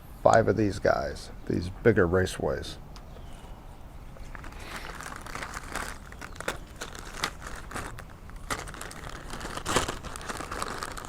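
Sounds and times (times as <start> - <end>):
plastic packaging crinkling: 4.1 - 11.0.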